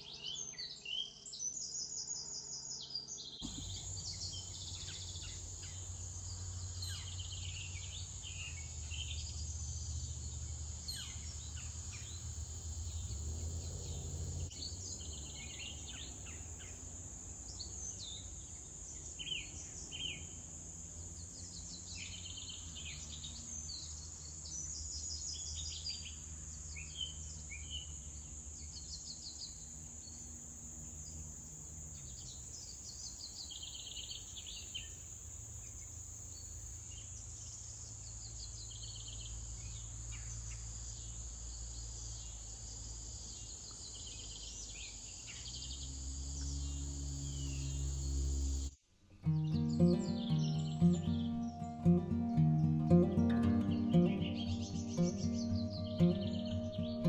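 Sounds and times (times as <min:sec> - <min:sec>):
insects chorus: 0:00.2 - 0:48.8, 0:49.5 - 0:57.0
pulsing insect trills: 0:03.4 - 0:48.8, 0:49.6 - 0:57.0.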